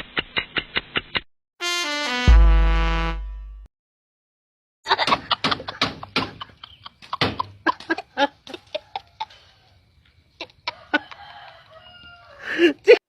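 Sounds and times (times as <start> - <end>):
chicken clucking: 6.4 - 12.4.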